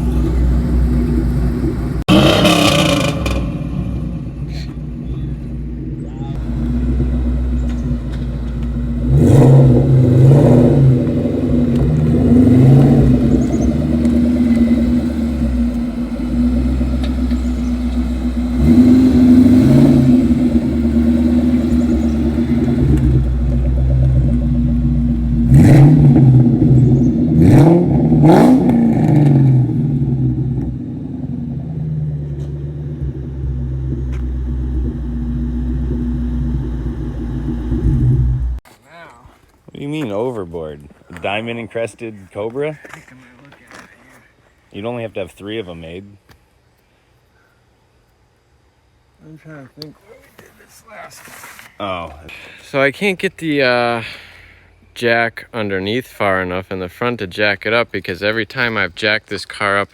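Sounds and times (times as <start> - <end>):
car engine accelerating hard: 0.0 - 38.6.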